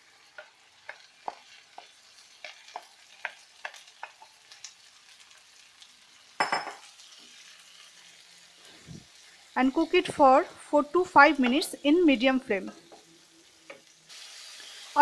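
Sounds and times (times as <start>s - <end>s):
oil sizzling: 0.0s - 15.0s
loud burst of sizzling: 13.3s - 15.0s.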